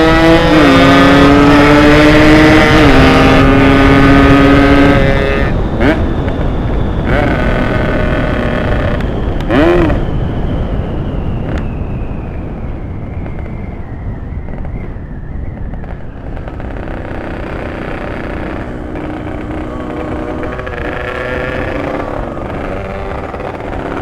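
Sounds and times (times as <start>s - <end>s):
wind rush: 0.0s - 24.0s
two-stroke motorcycle engine: 15.7s - 24.0s.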